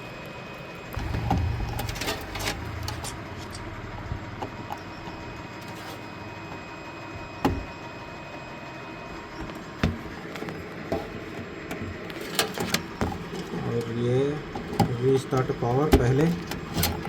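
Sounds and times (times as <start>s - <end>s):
low rumble with scraping: 0.9s - 6.6s
sharp knock: 1.0s - 3.8s.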